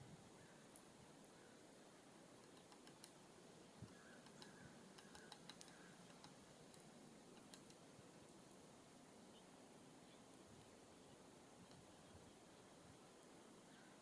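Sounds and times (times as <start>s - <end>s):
birds pecking at feeder: 2.3s - 8.6s, 10.5s - 12.4s.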